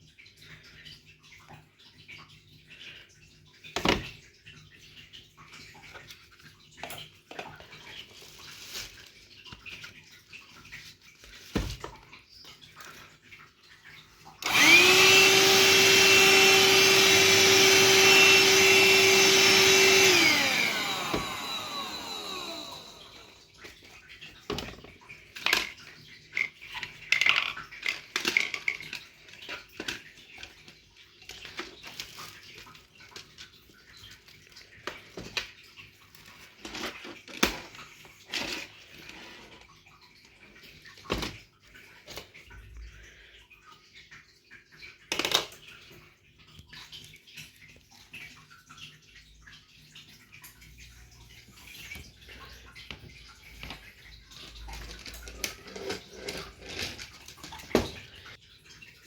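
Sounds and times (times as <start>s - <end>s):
vacuum cleaner motor whine: 14.4s - 23.5s.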